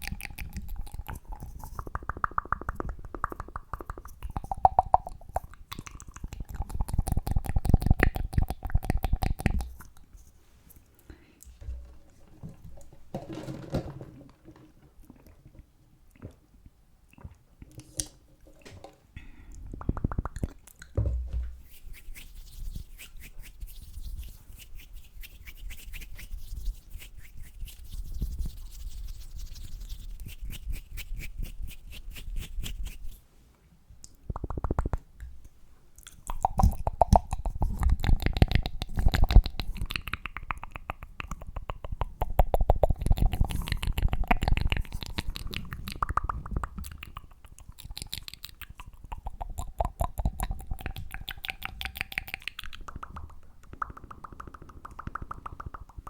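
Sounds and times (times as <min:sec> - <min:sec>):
mouth sounds: 0:00.0 - 0:10.2, 0:36.0 - 0:56.0
soft thumps: 0:11.5 - 0:14.7, 0:21.0 - 0:21.6
rapid tapping and clicks: 0:50.2 - 0:56.0.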